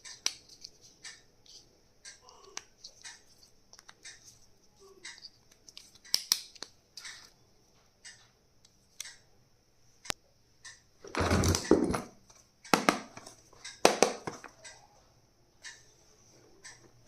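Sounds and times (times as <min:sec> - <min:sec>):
stationery clicks and taps: 0:10.1 - 0:14.8.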